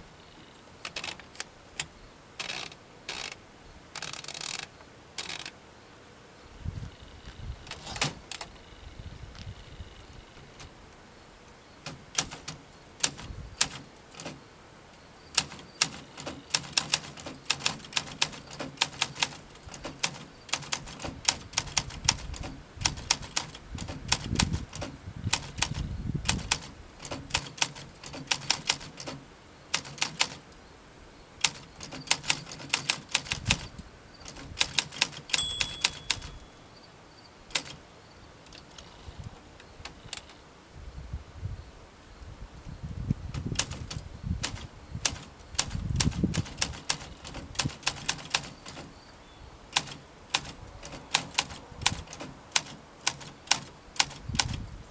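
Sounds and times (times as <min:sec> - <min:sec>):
typewriter key strikes: 0:11.8 - 0:14.4, 0:15.4 - 0:29.2, 0:31.4 - 0:36.4, 0:37.5 - 0:37.8, 0:49.8 - 0:54.6
typewriter bell ringing: 0:35.0 - 0:36.6.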